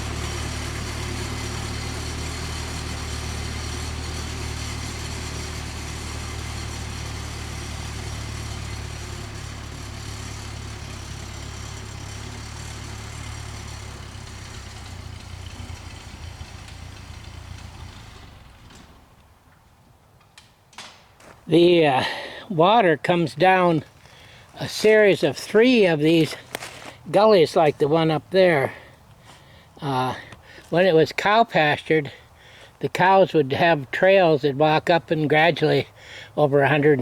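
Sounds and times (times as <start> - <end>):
engine running at low revs: 0.0 - 19.4.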